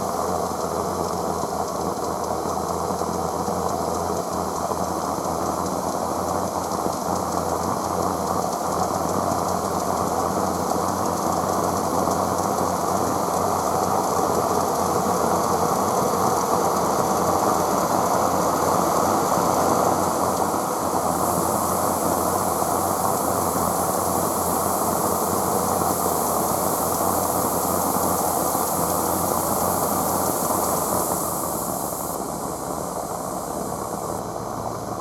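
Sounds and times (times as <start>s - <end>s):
steam locomotive hissing: 7.1s - 35.0s.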